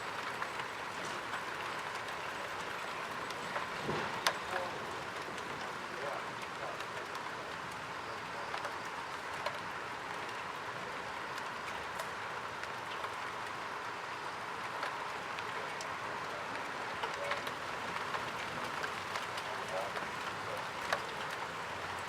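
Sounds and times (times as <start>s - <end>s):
rain hissing: 0.0s - 22.0s
raindrops ticking: 0.0s - 22.0s.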